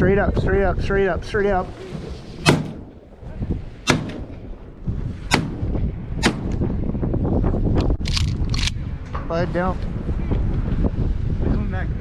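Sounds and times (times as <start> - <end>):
wind rumbling on microphone: 0.0 - 12.0
shotgun blasts: 2.4 - 3.2, 3.8 - 6.9.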